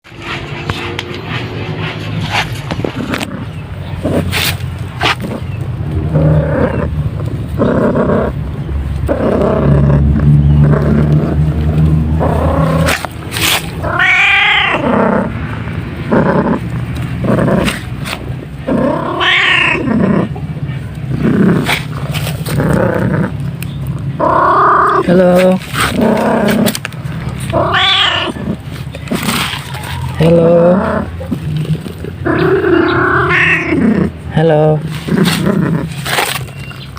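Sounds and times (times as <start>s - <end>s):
cat purring loudly: 9.1s - 20.4s, 21.1s - 23.6s, 24.2s - 36.1s
cat meowing: 13.8s - 14.9s, 19.0s - 19.9s, 27.5s - 28.5s, 32.8s - 33.8s.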